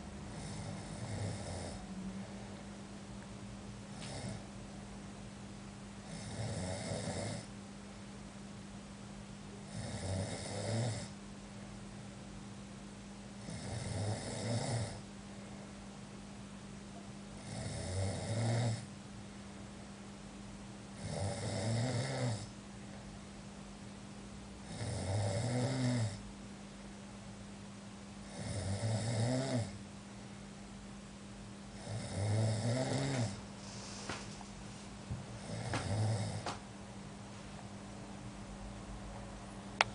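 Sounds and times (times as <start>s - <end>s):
person snoring: 0.3s - 1.9s, 4.0s - 4.4s, 6.0s - 7.5s, 9.6s - 11.1s, 13.4s - 15.0s, 17.4s - 18.9s, 21.0s - 22.5s, 24.6s - 26.2s, 28.2s - 29.8s, 31.8s - 34.3s, 35.4s - 36.6s.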